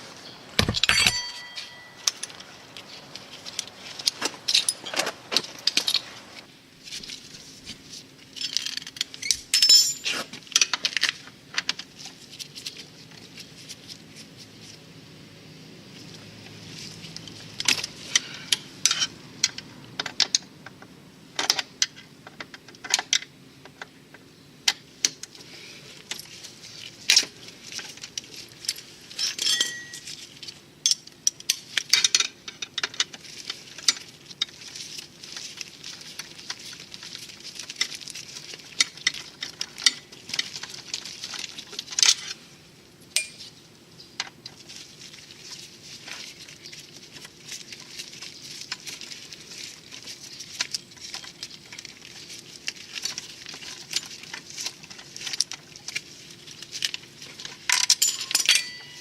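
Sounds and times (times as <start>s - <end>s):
tools and metal parts clinking: 0.6s - 6.1s, 8.3s - 11.8s, 27.1s - 34.6s, 43.2s - 43.6s, 56.8s - 59.0s.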